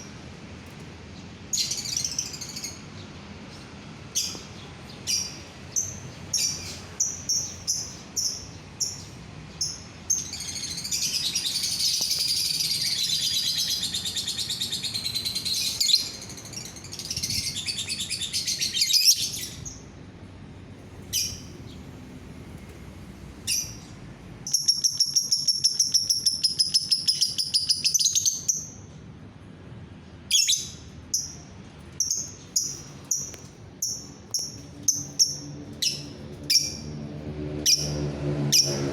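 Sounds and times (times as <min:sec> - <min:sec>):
lovebird chirping and trilling: 0:05.1 - 0:19.8, 0:21.1 - 0:21.5, 0:24.5 - 0:28.8, 0:30.3 - 0:36.8.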